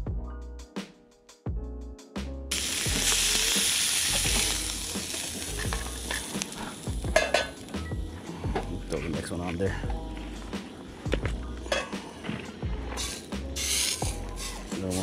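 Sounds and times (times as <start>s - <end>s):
steak sizzling in a pan: 2.5s - 9.7s, 11.6s - 15.0s.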